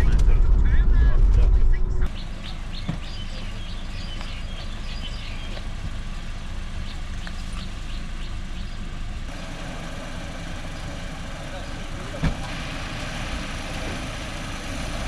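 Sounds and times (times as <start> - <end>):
steady low rumble: 0.0 - 14.2
small birds chirping: 2.1 - 12.2.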